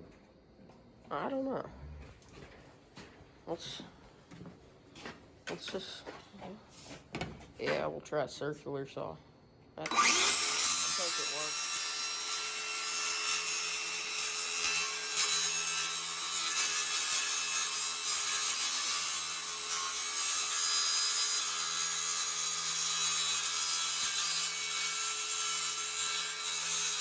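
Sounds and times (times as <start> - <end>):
circular saw cutting: 9.8 - 27.0.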